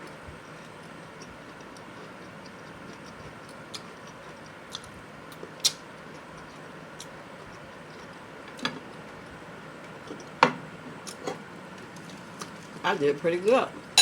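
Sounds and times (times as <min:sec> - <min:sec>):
person chewing food: 0:00.0 - 0:10.3.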